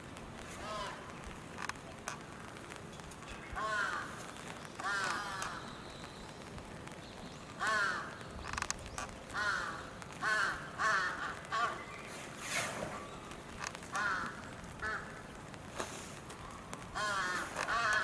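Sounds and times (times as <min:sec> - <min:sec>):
crow cawing: 0:03.6 - 0:04.1, 0:04.8 - 0:05.6, 0:07.6 - 0:08.2, 0:09.4 - 0:11.8, 0:13.9 - 0:15.2, 0:17.0 - 0:18.0.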